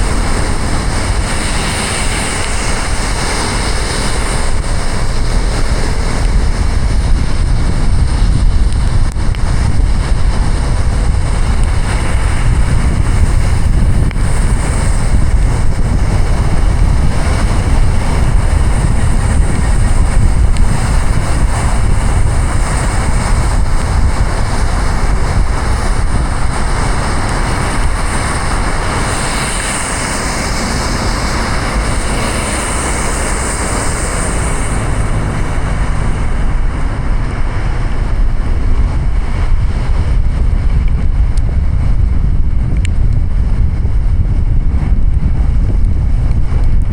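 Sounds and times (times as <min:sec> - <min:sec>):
deep car rumble: 0:00.0 - 0:46.9
rain hitting car: 0:00.0 - 0:46.9
tyres on wet road: 0:00.0 - 0:46.9.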